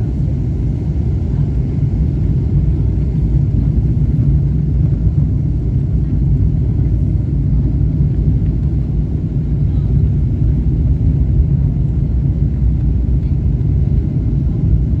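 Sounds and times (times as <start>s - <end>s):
airflow over fuselage: 0.0s - 15.0s
airplane cabin engine rumble: 0.0s - 15.0s.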